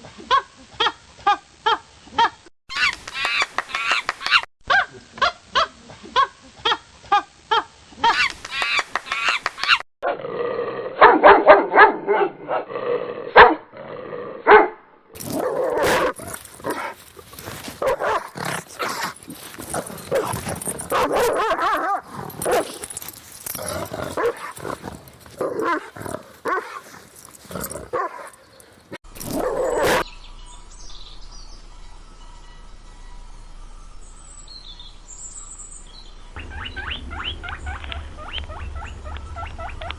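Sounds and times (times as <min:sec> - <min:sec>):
dogs barking and yelping: 0:14.5 - 0:30.1, 0:36.4 - 0:39.9.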